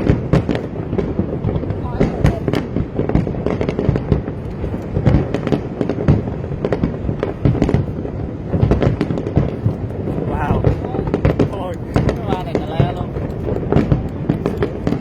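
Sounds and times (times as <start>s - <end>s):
fireworks bangs and crackling: 0.0s - 15.0s
low rumble: 9.4s - 15.0s.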